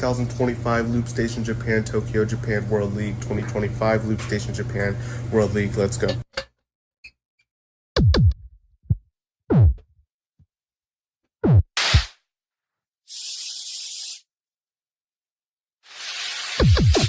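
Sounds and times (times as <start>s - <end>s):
deep beatboxed kicks: 8.0s - 9.9s.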